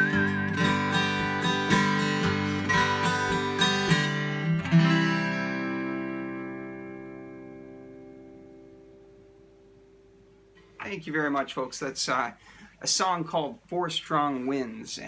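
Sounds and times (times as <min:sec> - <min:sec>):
acoustic guitar strumming: 0:00.0 - 0:11.0.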